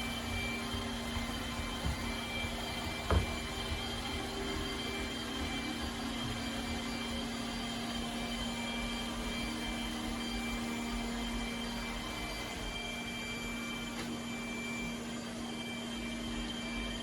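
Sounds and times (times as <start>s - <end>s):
robot vacuum motor whirring: 0.0s - 17.0s.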